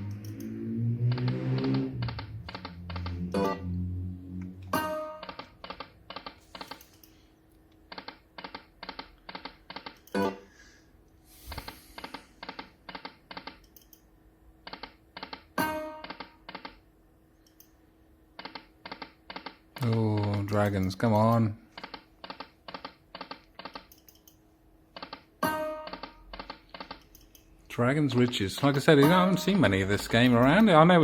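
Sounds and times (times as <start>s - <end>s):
slot machine reel ticks: 1.1s - 3.6s, 5.1s - 6.9s, 7.9s - 10.4s, 14.6s - 16.8s, 18.4s - 24.3s, 25.0s - 31.0s.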